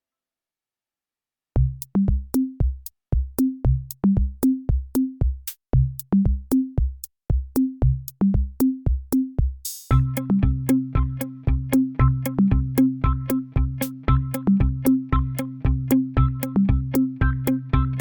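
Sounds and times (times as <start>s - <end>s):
electronic drum machine beat: 1.6s - 18.0s
short bass notes: 9.9s - 18.0s.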